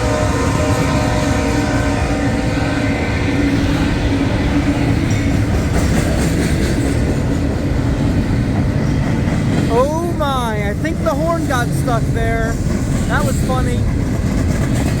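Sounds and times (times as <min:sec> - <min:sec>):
locomotive air horn: 0:00.0 - 0:03.2
freight train wheels rumbling: 0:00.0 - 0:15.0.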